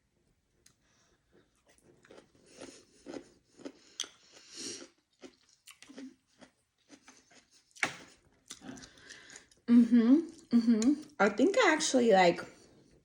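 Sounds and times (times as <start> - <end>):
person chewing food: 0.6 - 9.7.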